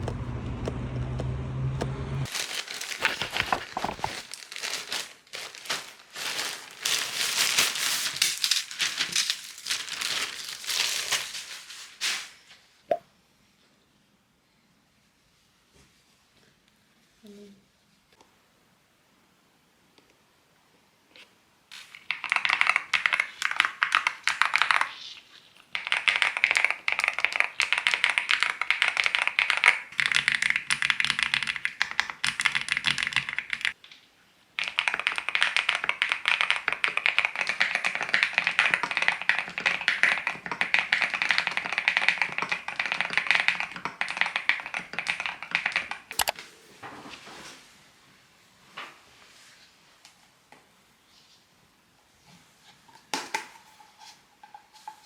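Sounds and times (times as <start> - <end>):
mechanical keyboard typing: 22.1 - 24.9, 25.8 - 33.8, 34.6 - 46.4.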